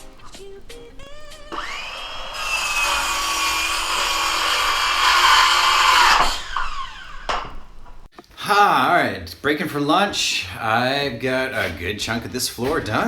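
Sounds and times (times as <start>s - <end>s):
circular saw cutting wood: 0.0s - 8.2s.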